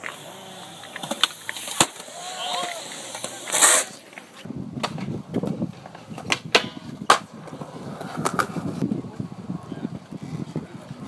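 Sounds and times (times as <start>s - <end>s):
skateboard clacks: 0.0s - 8.9s
skateboard wheels rolling on concrete: 0.0s - 11.0s.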